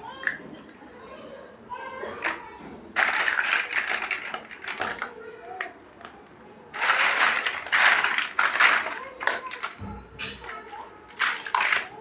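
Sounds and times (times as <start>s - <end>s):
plastic bricks rattling and clicking: 3.0s - 12.0s.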